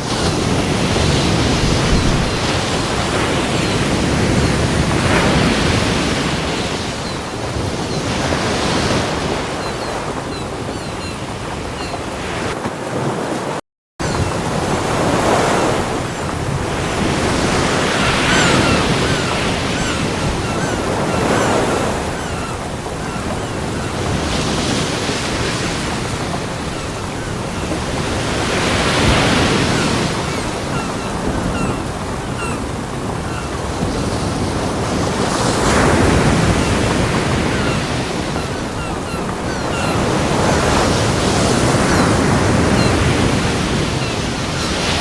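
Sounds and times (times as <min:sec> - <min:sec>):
ocean waves breaking on beach: 0:00.0 - 0:45.0.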